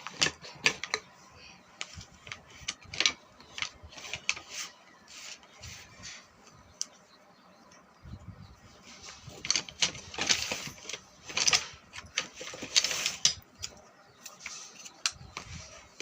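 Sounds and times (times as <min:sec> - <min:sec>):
plastic packaging rustling: 0:09.0 - 0:13.4
sharp clicks and crackles: 0:09.0 - 0:16.0.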